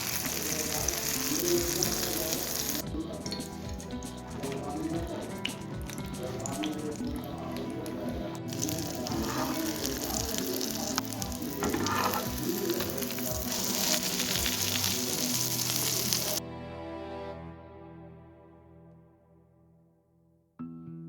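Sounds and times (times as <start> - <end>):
soft background music: 0.0 - 20.0
omelette sizzling in hot oil: 8.5 - 16.4.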